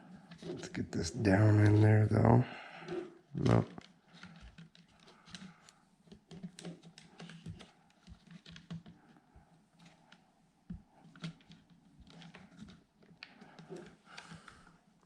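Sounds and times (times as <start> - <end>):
hands clicking and tapping on toy rifle: 3.8 - 9.0.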